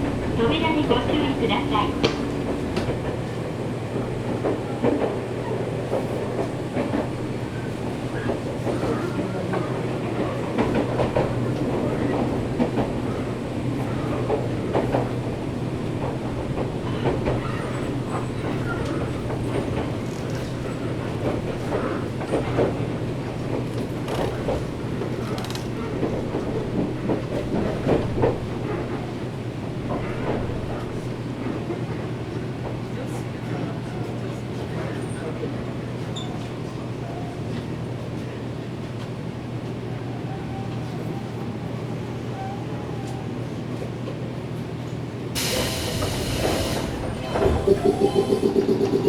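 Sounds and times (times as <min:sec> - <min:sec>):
train interior hum and rumble: 0:00.0 - 0:49.0.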